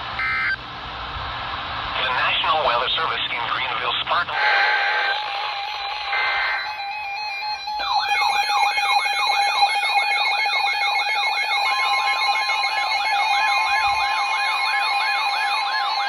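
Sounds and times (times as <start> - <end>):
steady warning tone: 0.0 - 0.6, 2.0 - 16.0
warbling siren alarm: 0.1 - 0.6, 4.4 - 16.0
screeching data burst: 0.2 - 0.6, 4.3 - 16.0.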